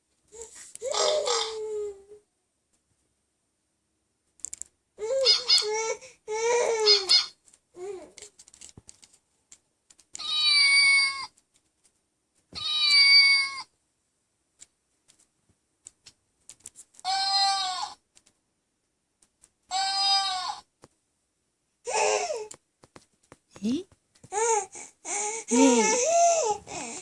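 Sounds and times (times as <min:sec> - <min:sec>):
recorded animal calls from speaker: 0:00.8 - 0:02.2, 0:05.1 - 0:05.8, 0:17.1 - 0:18.0, 0:19.7 - 0:20.7, 0:25.5 - 0:26.0.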